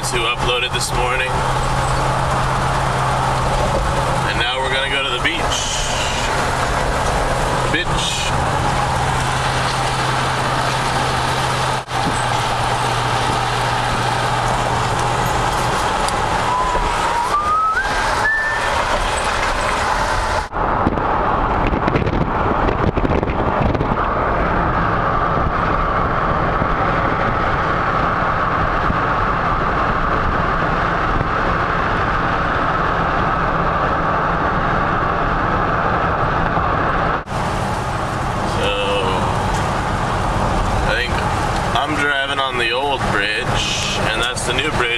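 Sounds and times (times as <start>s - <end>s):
vehicle road and engine noise: 0.0s - 44.9s
whistle-like rising tone: 16.5s - 18.9s.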